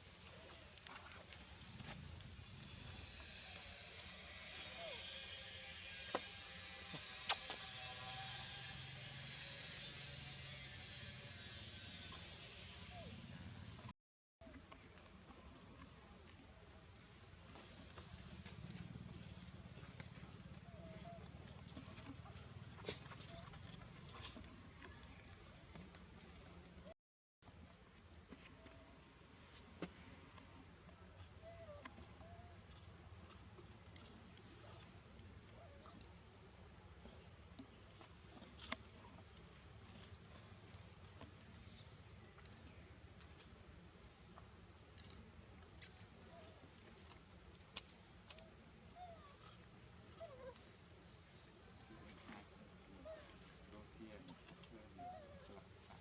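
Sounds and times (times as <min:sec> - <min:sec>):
insects chirring: 0:00.1 - 0:13.8.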